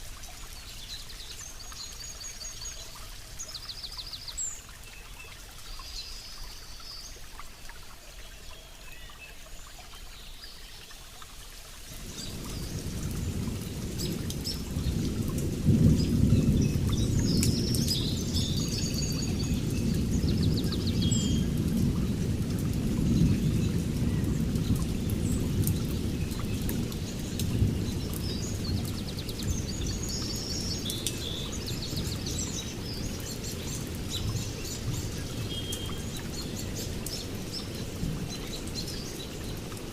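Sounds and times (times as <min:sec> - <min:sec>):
light rain: 0:00.0 - 0:39.9
birds chirping: 0:11.9 - 0:22.4, 0:23.0 - 0:39.8
rolling thunder rumble: 0:12.0 - 0:35.5.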